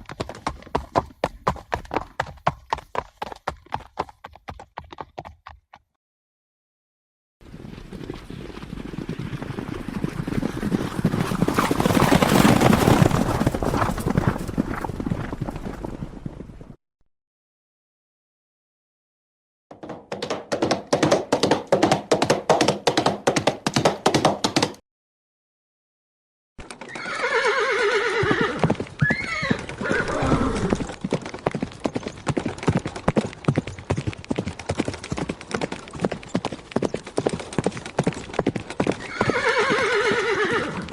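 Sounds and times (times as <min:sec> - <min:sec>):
horse hooves clip-clopping: 0:00.0 - 0:06.0, 0:07.4 - 0:16.8, 0:19.7 - 0:24.8, 0:26.6 - 0:40.9
horse whinnying: 0:26.8 - 0:31.0, 0:39.0 - 0:40.9.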